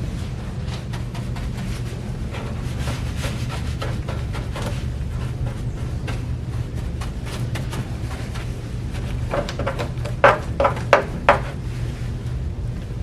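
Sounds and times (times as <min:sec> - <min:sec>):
low hum: 0:00.0 - 0:13.0
short scraping knocks: 0:09.2 - 0:11.6.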